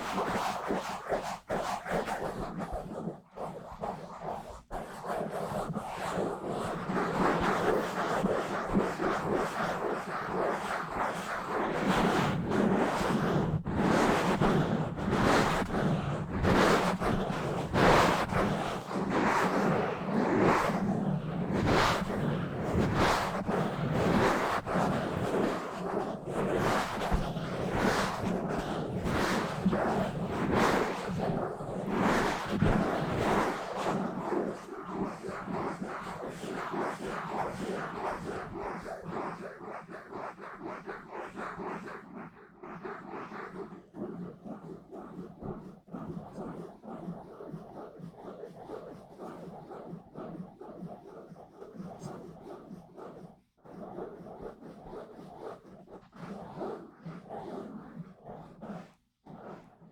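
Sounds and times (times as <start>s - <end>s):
scratching on microphone: 0.0s - 59.9s.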